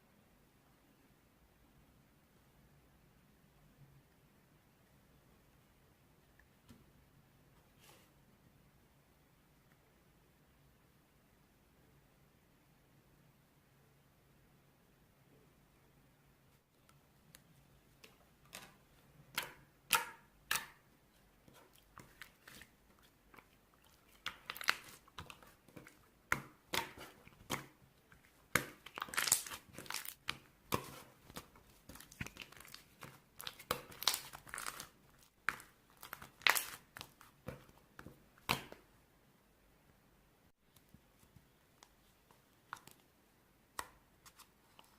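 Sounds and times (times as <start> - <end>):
crunchy slime crackling: 21.6 - 37.4.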